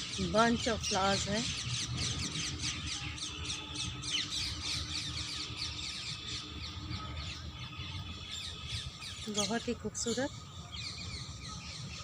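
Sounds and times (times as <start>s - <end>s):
birds chirping in chorus: 0.0s - 12.0s.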